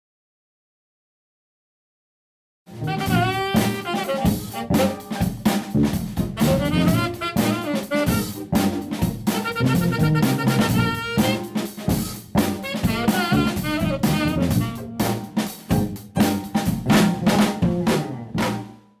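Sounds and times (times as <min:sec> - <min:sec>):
small jazz ensemble playing: 0:02.7 - 0:18.8
drum kit hits: 0:02.7 - 0:18.9.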